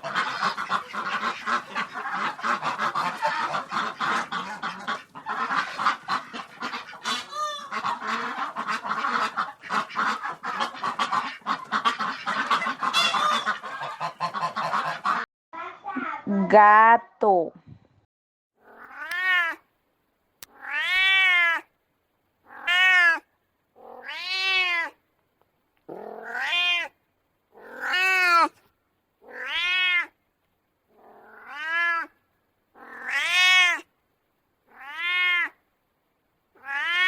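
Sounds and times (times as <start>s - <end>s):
cat meowing: 18.6s - 19.6s, 20.4s - 21.7s, 22.5s - 25.0s, 25.9s - 27.0s, 27.6s - 28.6s, 29.2s - 30.2s, 31.1s - 32.2s, 32.8s - 33.9s, 34.7s - 35.6s, 36.6s - 37.0s.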